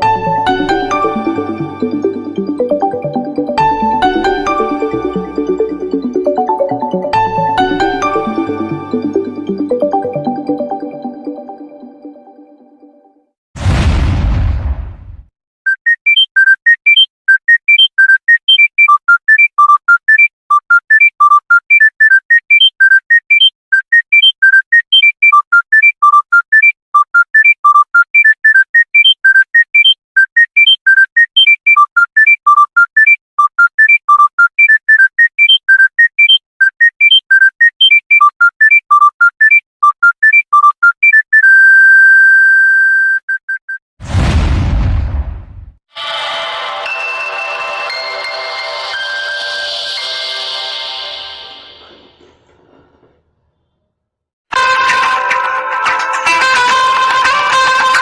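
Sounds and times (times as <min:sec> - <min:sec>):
electronic ringtone beeps: 0:00.0 - 0:12.6, 0:15.7 - 0:43.8
loud boom: 0:13.6 - 0:15.3, 0:44.0 - 0:45.8
noisy burst: 0:13.6 - 0:15.3.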